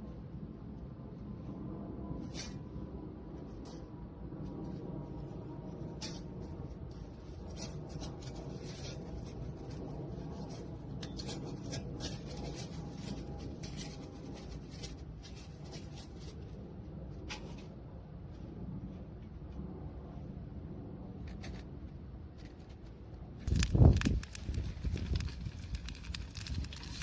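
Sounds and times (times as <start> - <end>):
fire pops and snaps: 23.4 - 27.0
wood fire crackling: 23.4 - 27.0.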